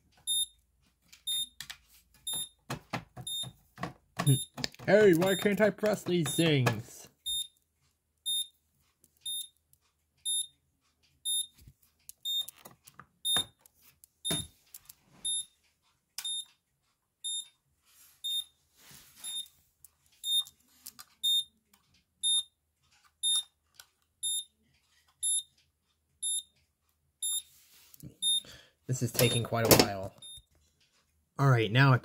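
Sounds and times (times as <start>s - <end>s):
clicks and handling noise: 0.0s - 7.1s, 10.8s - 17.6s, 19.2s - 22.2s, 22.8s - 28.1s, 28.9s - 31.2s.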